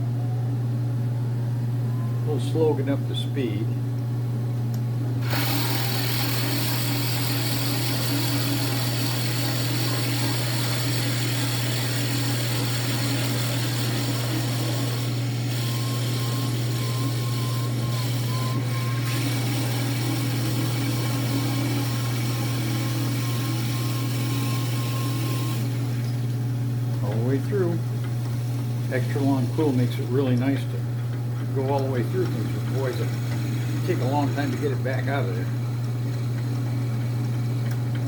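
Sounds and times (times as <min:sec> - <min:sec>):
drill bit boring through wood: 0:05.2 - 0:25.9, 0:31.7 - 0:35.2
wood lathe motor hum: 0:05.2 - 0:38.0.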